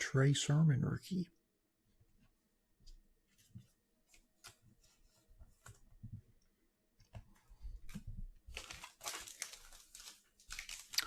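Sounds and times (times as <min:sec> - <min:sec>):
wrapper crinkling: 0:08.5 - 0:11.0.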